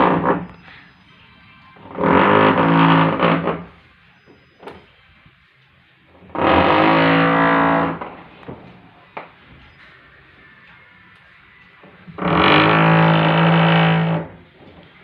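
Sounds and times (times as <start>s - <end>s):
harsh buzzing tones from machine: 12.1s - 14.4s.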